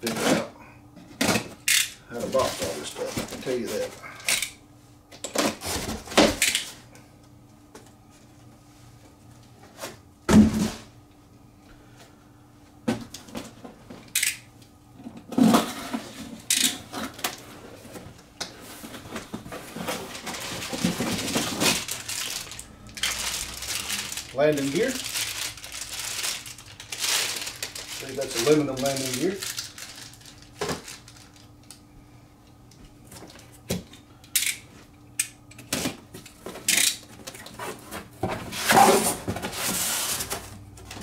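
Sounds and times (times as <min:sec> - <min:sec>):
parts handled in cardboard box: 0:15.4 - 0:31.2.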